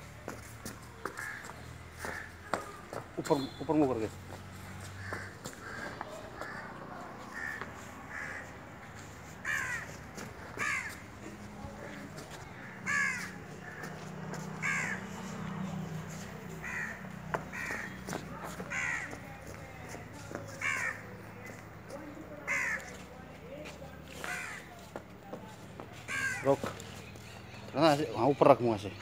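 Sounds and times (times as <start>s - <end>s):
crows cawing: 1.0s - 2.8s, 4.8s - 11.1s, 11.9s - 15.3s, 16.1s - 21.6s, 22.5s - 23.0s, 24.1s - 24.7s, 26.0s - 27.6s.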